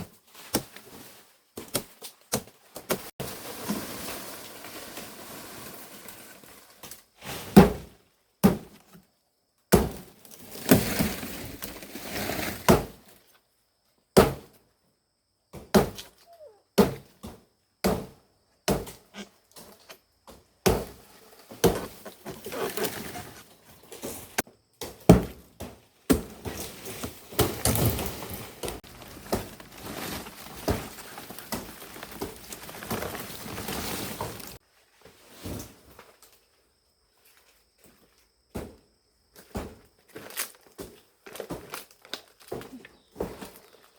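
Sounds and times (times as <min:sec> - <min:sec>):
blade chopping plant stalks: 0:00.0 - 0:04.2, 0:20.3 - 0:34.6
leaves rustling and crackling: 0:03.0 - 0:07.4, 0:10.2 - 0:12.7, 0:21.1 - 0:24.4, 0:26.4 - 0:35.6.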